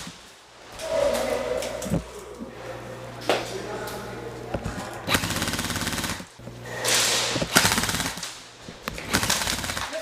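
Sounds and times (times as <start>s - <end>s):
airsoft rifle full-auto bursts: 5.1s - 6.4s, 7.5s - 8.3s, 9.0s - 10.0s.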